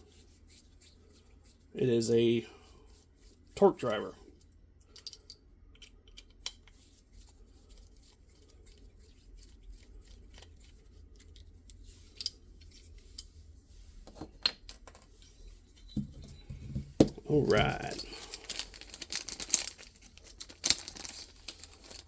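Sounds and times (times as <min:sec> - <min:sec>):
small clicks of screwdriver handling: 0:04.9 - 0:06.8.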